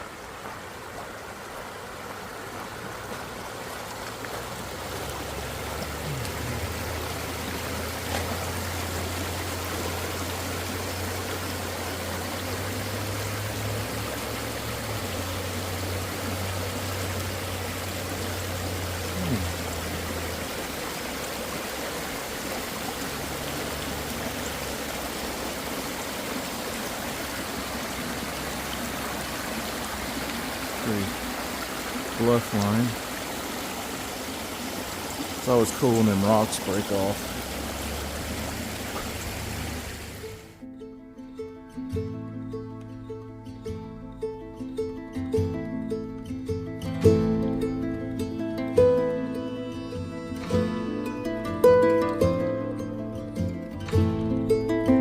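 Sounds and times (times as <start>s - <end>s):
water rushing over rocks: 0.0s - 40.6s.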